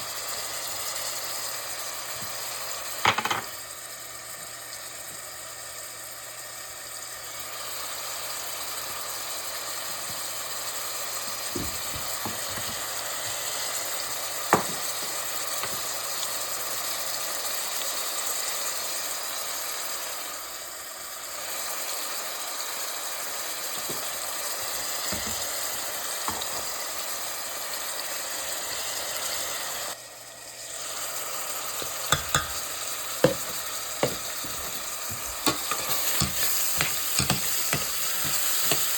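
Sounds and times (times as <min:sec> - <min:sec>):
food sizzling in a pan: 0:00.0 - 0:38.9
utensil clicking against pan: 0:31.8 - 0:34.7, 0:35.4 - 0:38.9.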